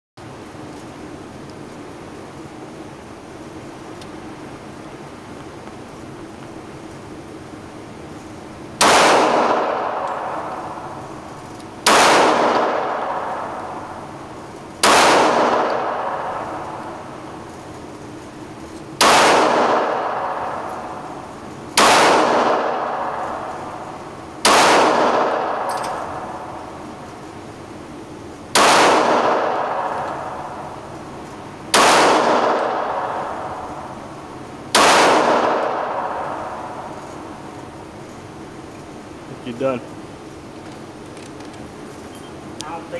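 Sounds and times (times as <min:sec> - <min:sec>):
pistol shots with echo: 0:08.8 - 0:14.2, 0:14.8 - 0:17.4, 0:19.0 - 0:27.1, 0:28.5 - 0:37.6.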